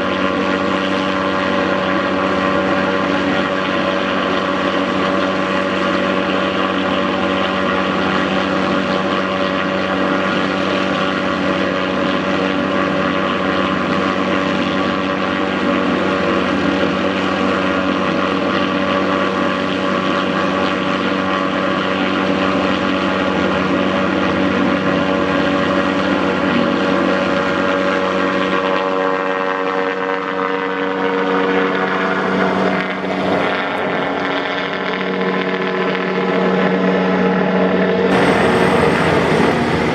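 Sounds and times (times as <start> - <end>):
helicopter engine and rotor whine: 0.0 - 39.9.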